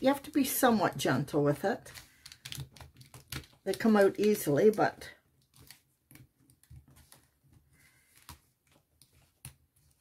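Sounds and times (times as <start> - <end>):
paper card clicks and taps: 1.9 - 4.8, 5.4 - 10.0.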